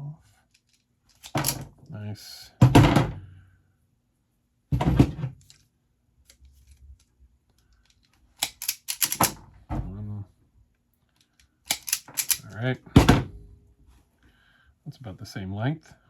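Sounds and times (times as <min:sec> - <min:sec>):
sharp clicks and snaps: 0:06.2 - 0:09.3, 0:11.1 - 0:12.5.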